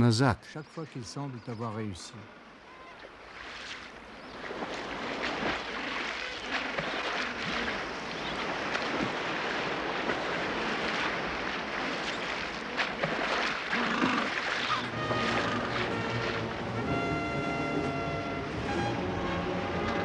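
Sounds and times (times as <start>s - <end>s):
sea surf breaking: 4.4s - 20.0s
music tones: 14.9s - 20.0s.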